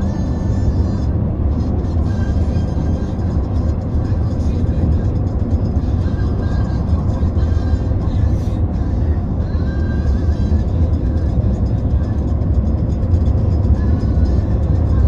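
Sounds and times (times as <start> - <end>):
car driving rumble: 0.0 - 15.0
music playing: 0.0 - 15.0.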